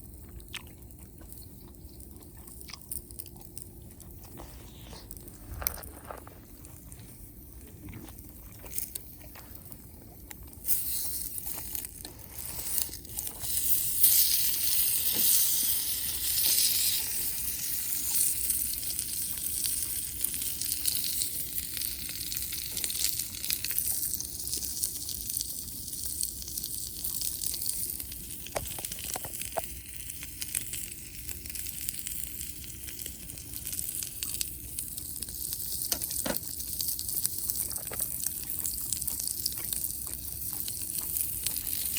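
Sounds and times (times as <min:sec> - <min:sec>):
campfire hissing and crackling: 0:10.6 - 0:41.9.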